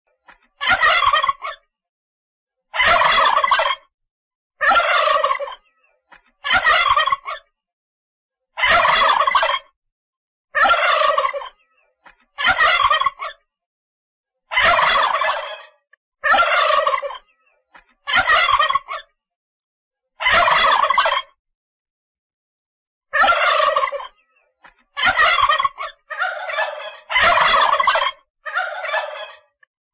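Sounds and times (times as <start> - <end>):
turkey gobbling: 0.7 - 1.6, 2.8 - 3.8, 4.6 - 5.7, 6.5 - 7.4, 8.7 - 9.6, 10.6 - 11.6, 12.4 - 13.3, 14.5 - 17.2, 20.3 - 21.2, 23.2 - 24.2, 25.0 - 29.6.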